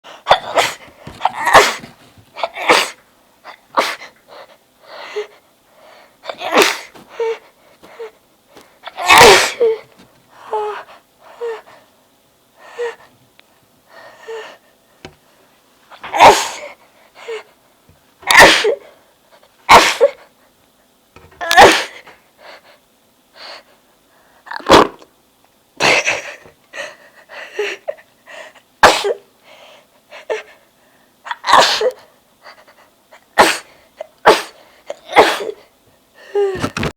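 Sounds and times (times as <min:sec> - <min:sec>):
woman sneezing: 0:00.3 - 0:03.0, 0:03.7 - 0:04.1, 0:06.2 - 0:07.4, 0:08.8 - 0:09.8, 0:16.0 - 0:16.7, 0:18.3 - 0:18.9, 0:19.7 - 0:20.2, 0:21.4 - 0:22.1, 0:28.8 - 0:29.3, 0:31.3 - 0:32.0, 0:33.4 - 0:35.6.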